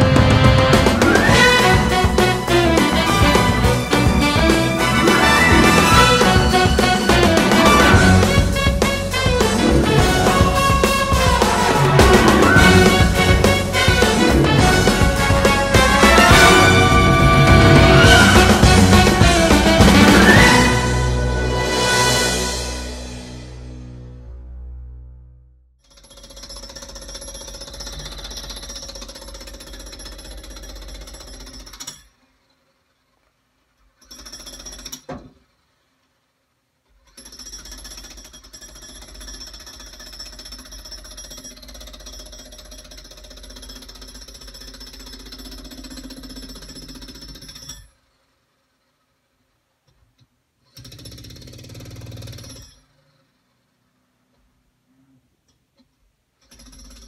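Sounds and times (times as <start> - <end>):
jackhammer running: 0.0 - 21.6, 25.8 - 32.1, 34.0 - 35.1, 37.1 - 47.8, 50.8 - 52.8, 56.4 - 57.0.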